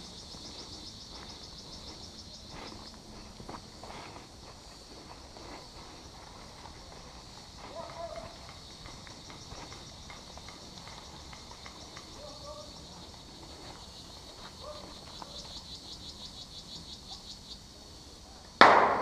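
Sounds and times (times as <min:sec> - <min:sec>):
insects chirring: 0:00.0 - 0:19.0
loud sharp crack: 0:18.6 - 0:19.0.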